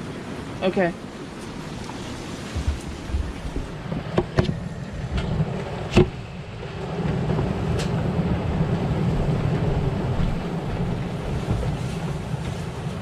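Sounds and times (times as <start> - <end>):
steady low rumble: 0.0 - 13.0
knocks and clicks in truck cab: 2.6 - 6.2
loud thump: 5.9 - 6.2.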